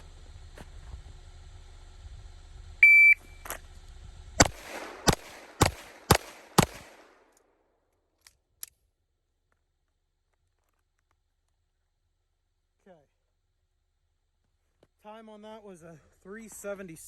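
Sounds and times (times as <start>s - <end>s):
shot timer beep: 2.8s - 3.5s
pistol shots: 4.4s - 7.4s.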